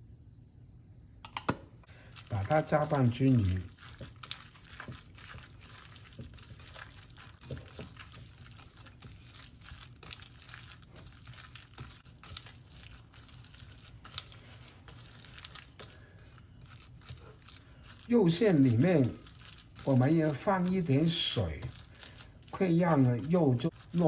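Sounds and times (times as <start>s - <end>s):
utensil clicking against bowl: 1.2s - 1.6s
wet squelching of stirred filling: 1.8s - 24.0s.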